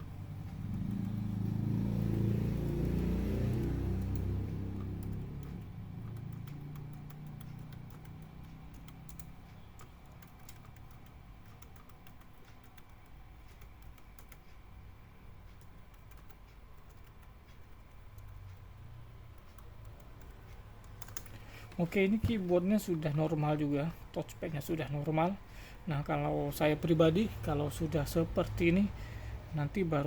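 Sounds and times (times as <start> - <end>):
laptop keys clicking: 0.0 - 28.9.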